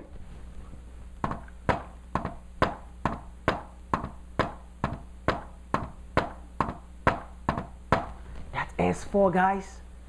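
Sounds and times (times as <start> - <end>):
hand taps in gallop rhythm: 1.2 - 8.2.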